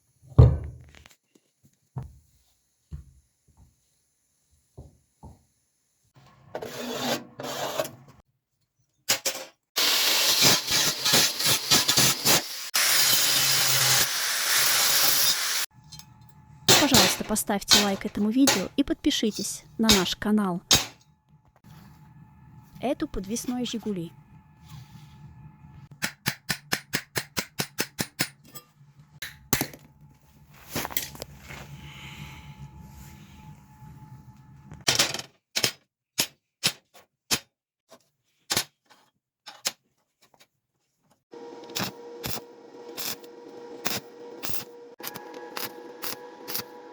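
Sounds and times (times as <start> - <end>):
arc welding crackle and sizzle: 9.8 - 15.7, 41.4 - 46.9
low hum: 21.0 - 25.9, 28.8 - 34.8
rustling scrape: 30.2 - 31.9.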